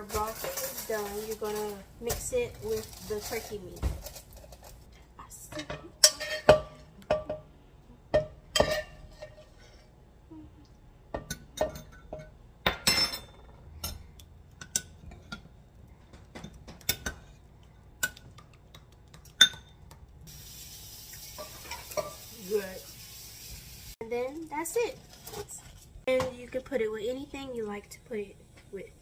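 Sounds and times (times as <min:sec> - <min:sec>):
food frying sizzle: 0:00.0 - 0:04.9, 0:20.0 - 0:29.0
spoon scraping a pan: 0:06.0 - 0:07.3, 0:08.6 - 0:09.9, 0:21.3 - 0:22.3.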